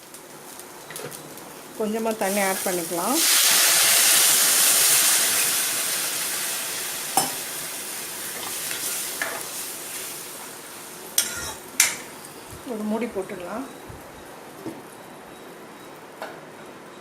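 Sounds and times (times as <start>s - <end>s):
vegetables sizzling in a pan: 0.0s - 13.7s.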